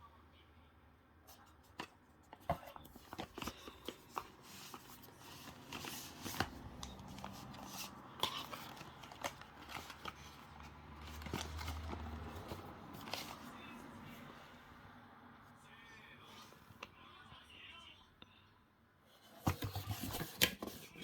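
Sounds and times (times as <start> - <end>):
packaging crinkling and rustling: 2.5 - 13.8.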